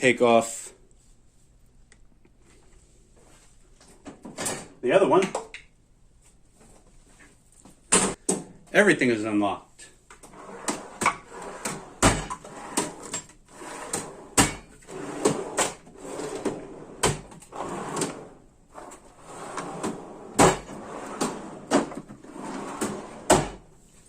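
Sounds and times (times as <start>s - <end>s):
drawers clunking shut: 3.9s - 4.8s, 10.2s - 23.7s
steel drawers sliding on runners: 10.2s - 23.7s.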